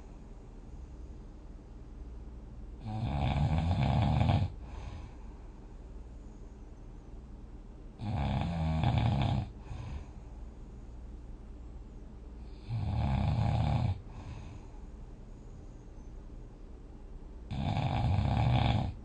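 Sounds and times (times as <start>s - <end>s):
person snoring: 2.8s - 5.1s, 8.0s - 10.1s, 12.4s - 14.6s, 17.5s - 19.0s.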